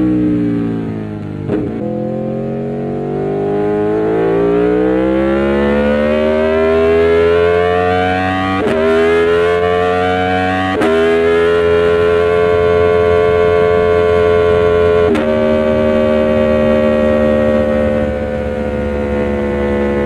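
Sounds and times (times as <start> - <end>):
motorcycle engine revving: 0.0 - 20.0
gear upshift: 10.6 - 20.0.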